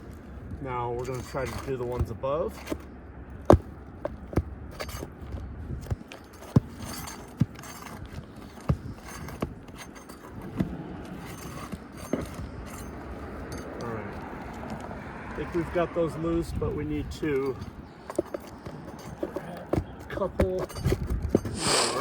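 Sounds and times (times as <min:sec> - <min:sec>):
scraping on shingles: 0:00.0 - 0:22.0
metal tool clinking on nails: 0:04.7 - 0:15.0, 0:17.2 - 0:22.0.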